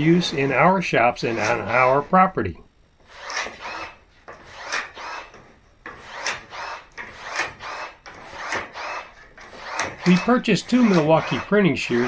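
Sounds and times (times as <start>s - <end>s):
pruning shears cutting plywood: 1.2s - 2.0s, 3.1s - 12.0s.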